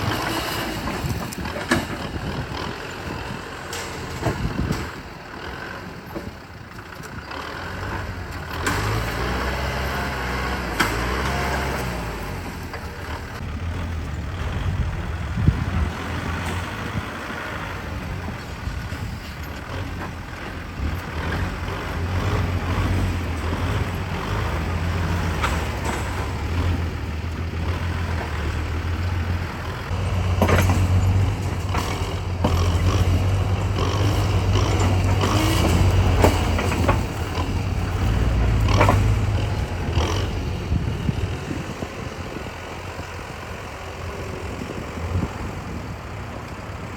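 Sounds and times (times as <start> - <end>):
clanks and knocks: 0.0 - 2.7, 3.6 - 5.0, 25.0 - 26.8, 29.8 - 40.3
diesel construction machinery running: 0.0 - 46.9.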